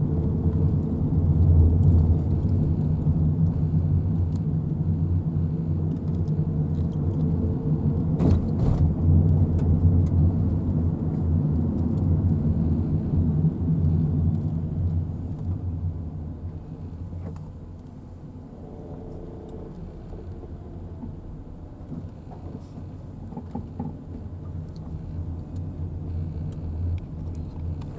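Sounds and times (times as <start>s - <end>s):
road vehicle rumble: 0.0s - 27.9s.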